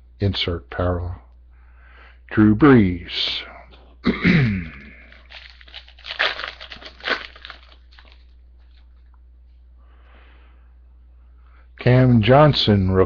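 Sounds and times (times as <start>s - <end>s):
foil wrapper crinkling: 4.9s - 9.2s.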